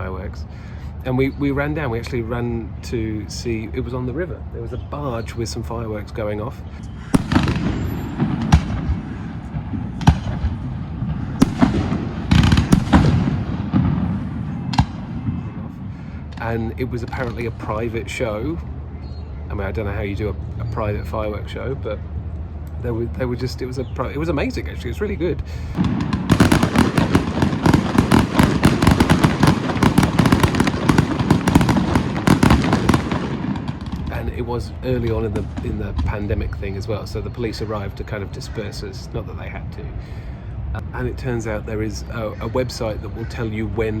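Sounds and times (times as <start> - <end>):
fireworks banging: 6.8 - 18.6, 24.5 - 38.0.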